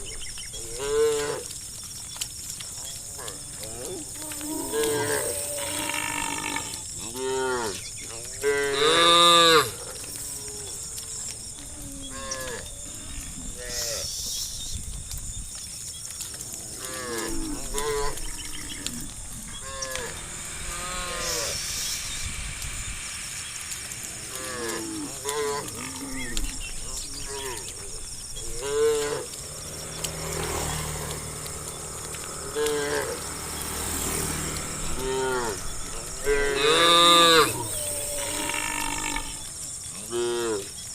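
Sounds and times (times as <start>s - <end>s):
cows mooing: 0.5s - 1.5s, 2.8s - 14.1s, 16.3s - 22.2s, 23.1s - 40.8s.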